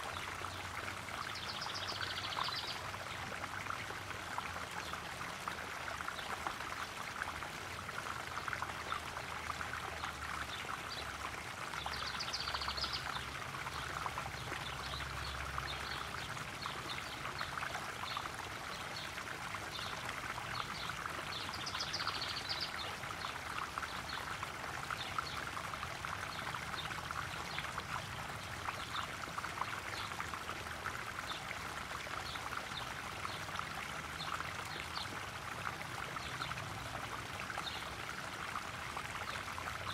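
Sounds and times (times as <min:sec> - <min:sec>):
pond waterfall splashing: 0:00.0 - 0:39.9.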